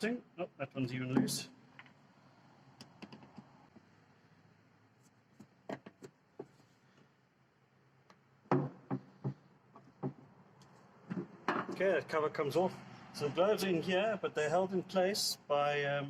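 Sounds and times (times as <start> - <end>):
knocks: 8.5 - 10.2, 11.1 - 11.8.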